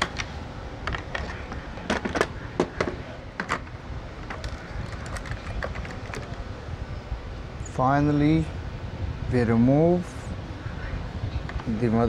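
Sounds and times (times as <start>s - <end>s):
low background noise: 0.0s - 12.0s
laptop parts clicking and tapping: 4.2s - 6.4s.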